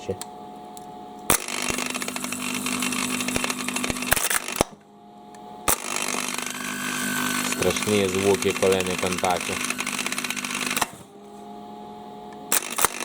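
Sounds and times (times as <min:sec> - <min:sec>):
sharp electrical snaps: 0:01.3 - 0:04.7, 0:12.5 - 0:13.0
starter motor whirring: 0:01.3 - 0:11.3, 0:12.3 - 0:13.0.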